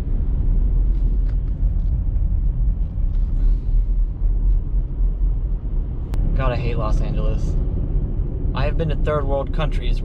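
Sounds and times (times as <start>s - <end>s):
car engine and tyres rumbling: 0.0s - 10.0s.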